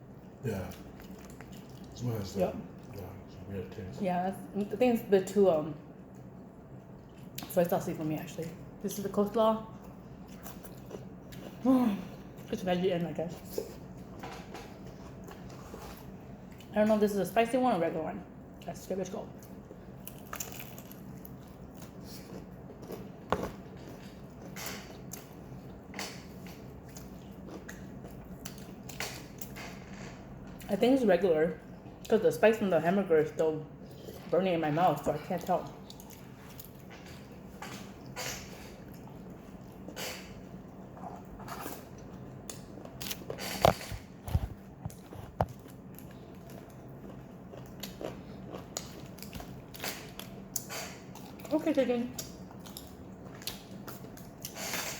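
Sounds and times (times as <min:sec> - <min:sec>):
low steady hum: 0:00.0 - 0:54.9
person chewing food: 0:00.1 - 0:02.0, 0:09.8 - 0:12.5, 0:19.4 - 0:29.6, 0:35.4 - 0:51.5, 0:52.2 - 0:54.9
mouth and handling noises: 0:43.0 - 0:45.9.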